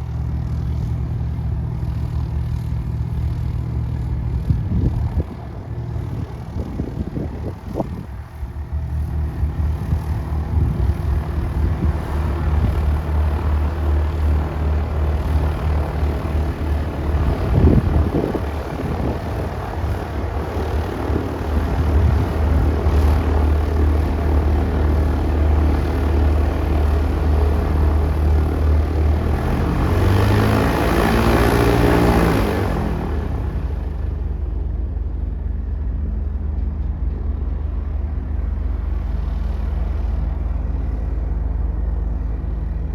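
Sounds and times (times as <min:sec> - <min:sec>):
propeller airplane engine droning: 0:00.0 - 0:42.9.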